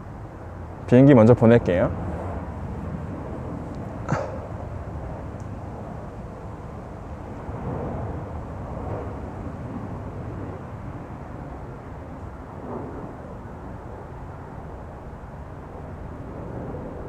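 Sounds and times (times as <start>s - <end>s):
airplane engines rumbling: 0.0s - 17.0s.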